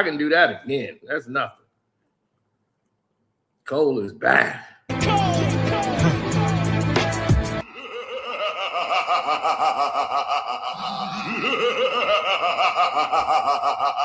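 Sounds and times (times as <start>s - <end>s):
man laughing: 5.1s - 6.8s, 7.6s - 14.0s.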